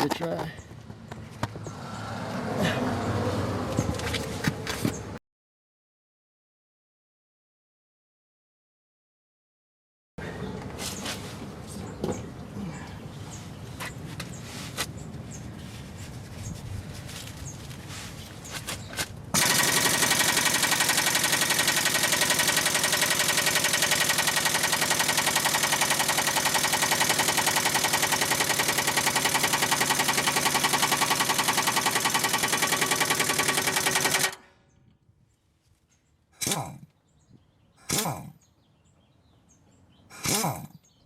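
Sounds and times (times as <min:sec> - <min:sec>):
air impact wrench hammering: 0:19.4 - 0:34.4, 0:40.2 - 0:40.7.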